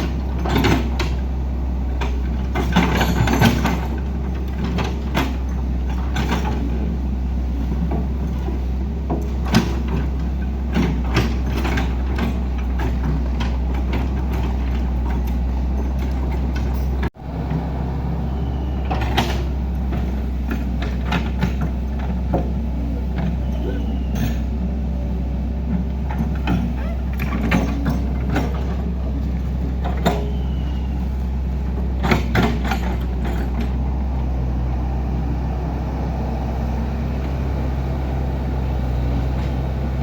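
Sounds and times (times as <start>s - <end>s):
metallic clanks and knocks: 0.0s - 6.9s, 7.8s - 17.1s, 18.8s - 24.9s, 25.6s - 33.8s
heavy diesel machinery droning: 0.0s - 40.0s.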